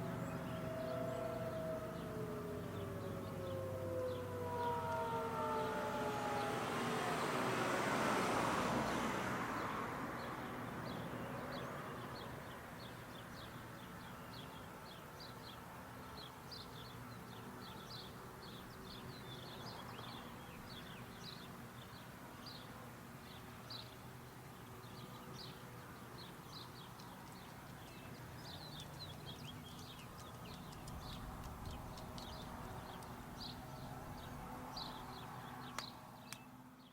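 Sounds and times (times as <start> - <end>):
siren falling tone: 0.0 - 8.9
faint steady background noise: 0.0 - 36.9
small birds chirping: 9.6 - 36.9.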